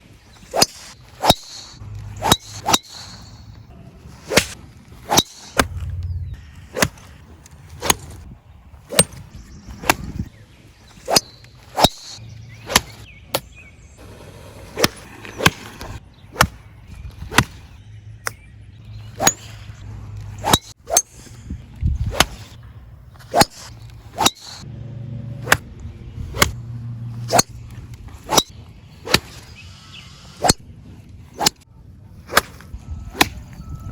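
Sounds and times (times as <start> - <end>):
golf clubs striking balls: 0.4 - 8.3, 8.9 - 21.4, 23.2 - 24.7, 25.3 - 29.5, 31.3 - 33.6
club swing swish: 0.5 - 3.5, 4.1 - 6.2, 7.8 - 8.3, 8.9 - 9.2, 11.0 - 13.0, 14.7 - 16.6, 17.2 - 17.7, 19.2 - 21.3, 22.0 - 22.6, 23.2 - 24.6, 25.4 - 29.4, 31.3 - 31.6, 32.2 - 33.5.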